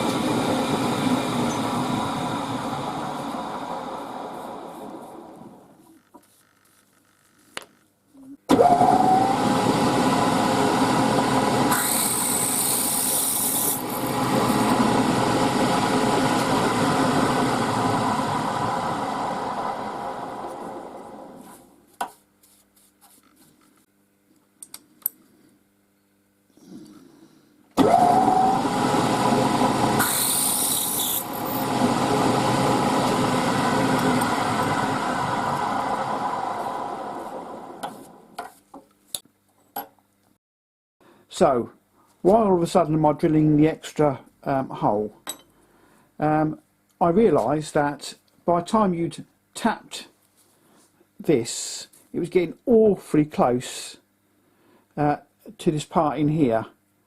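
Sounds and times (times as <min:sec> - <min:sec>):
machine tool motor whining: 0:27.8 - 0:38.2.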